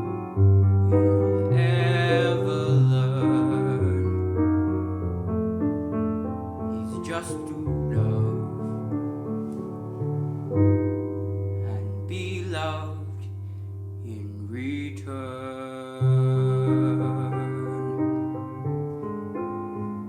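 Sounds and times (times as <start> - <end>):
piano chords: 0.0 - 20.0
man singing with vibrato: 0.9 - 4.4, 6.8 - 8.8, 11.6 - 13.4, 14.0 - 18.4.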